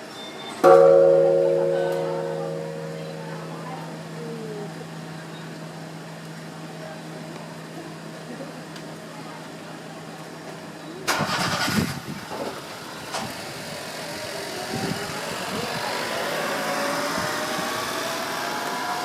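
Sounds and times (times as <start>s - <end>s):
vehicle engine starting and running: 10.2s - 19.0s.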